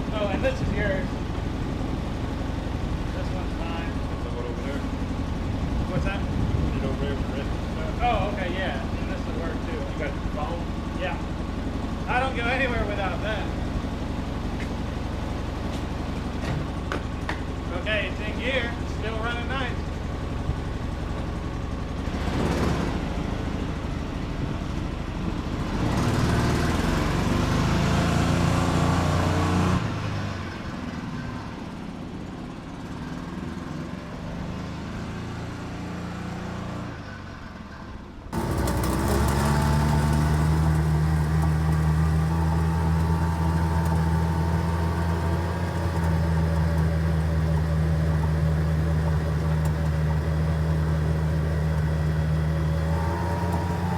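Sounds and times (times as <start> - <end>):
utility vehicle engine running: 0.0 - 53.9.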